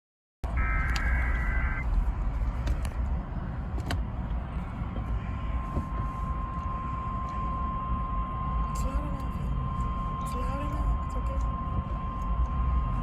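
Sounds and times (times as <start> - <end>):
low background rumble: 0.4 - 13.0
high data tones burst: 0.5 - 1.9
steady alert tone: 0.6 - 1.8.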